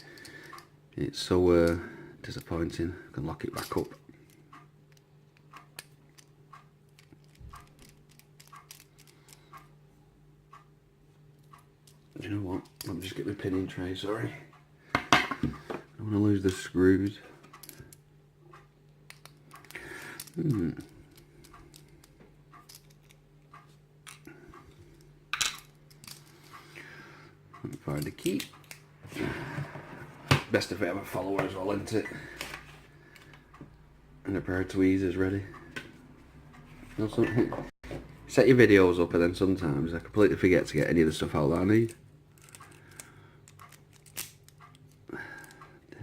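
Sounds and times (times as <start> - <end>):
low steady hum: 0.0 - 46.0
clock ticking: 10.4 - 10.8, 18.5 - 18.8.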